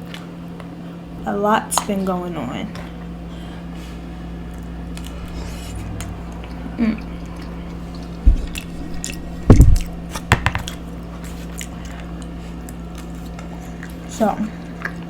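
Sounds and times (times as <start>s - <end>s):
steady low hum: 2.0s - 15.0s
sharp knocks and thumps: 8.1s - 10.8s.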